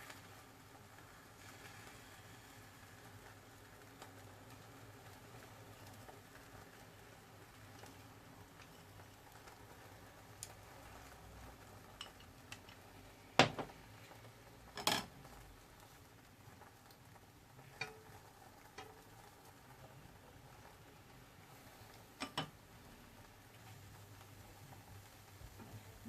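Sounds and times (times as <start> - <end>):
faint steady background: 0.0 - 26.0
utensils clinking against cookware: 14.8 - 15.1, 22.2 - 22.5.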